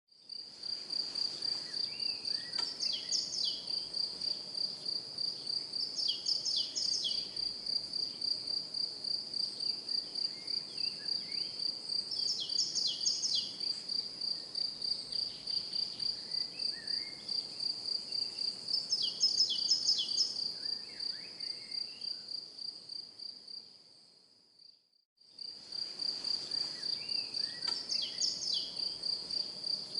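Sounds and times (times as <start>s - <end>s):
birds chirping: 1.4s - 3.8s, 26.6s - 28.9s.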